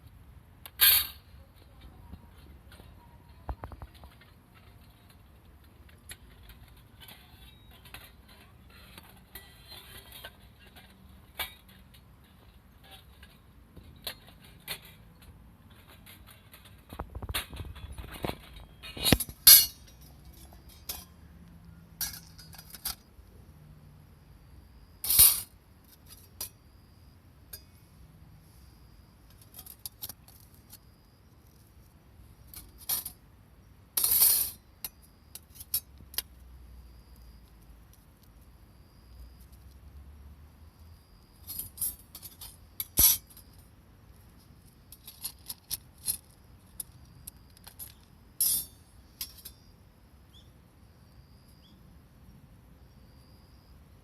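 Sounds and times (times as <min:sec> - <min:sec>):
sheet metal clinking and clanking: 0:17.4 - 0:21.2.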